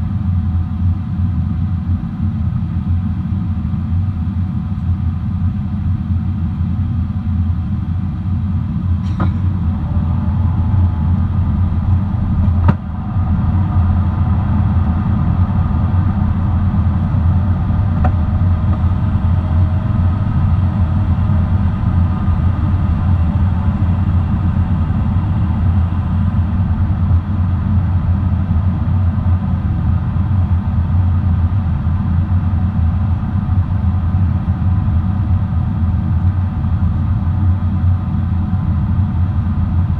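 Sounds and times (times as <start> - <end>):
airplane cabin rumble: 0.0 - 39.9.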